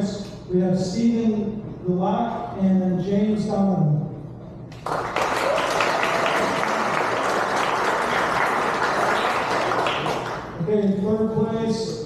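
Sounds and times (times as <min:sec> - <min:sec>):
group of people applauding: 0:04.7 - 0:10.6.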